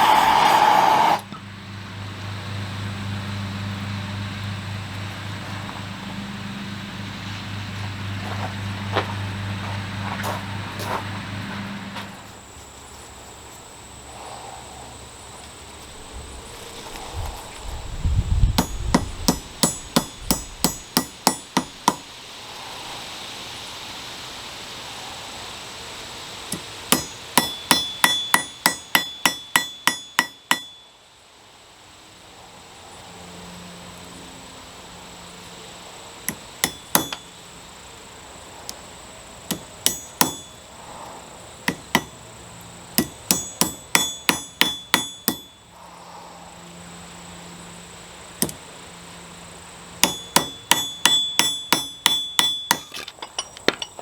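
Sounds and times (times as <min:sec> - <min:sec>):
hammer striking metal: 0:18.6 - 0:22.1, 0:26.5 - 0:30.9, 0:36.3 - 0:37.3, 0:39.5 - 0:40.6, 0:41.7 - 0:42.2, 0:43.0 - 0:45.6, 0:50.0 - 0:54.0.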